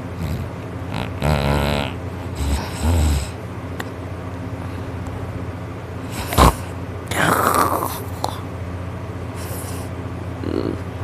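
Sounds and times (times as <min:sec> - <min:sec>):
loud snoring: 0:00.2 - 0:03.4, 0:06.1 - 0:08.0
sharp snort: 0:06.1 - 0:07.9.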